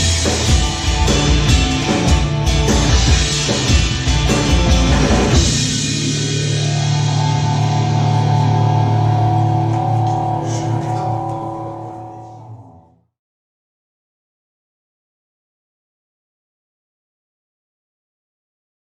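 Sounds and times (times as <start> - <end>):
rock band final hit: 0.0 - 10.8
electric guitar chord ringing: 0.0 - 12.6.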